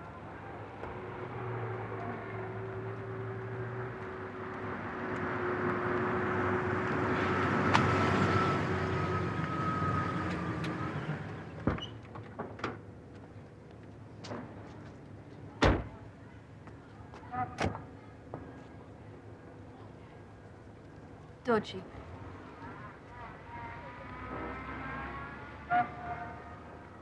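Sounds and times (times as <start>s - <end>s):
vehicle passing: 0.6s - 11.4s, 21.9s - 27.0s.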